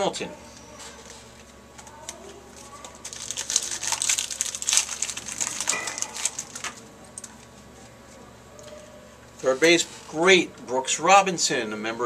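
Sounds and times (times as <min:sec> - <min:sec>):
trading cards rustling and clicking: 0:00.9 - 0:07.5.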